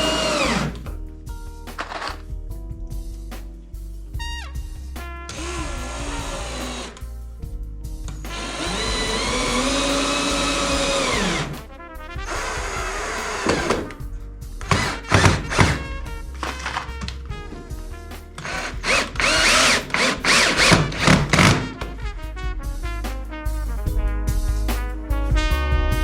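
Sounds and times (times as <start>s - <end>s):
power tool motor whine: 0.0s - 0.8s, 8.3s - 11.5s, 18.4s - 21.2s
background music: 0.0s - 26.0s.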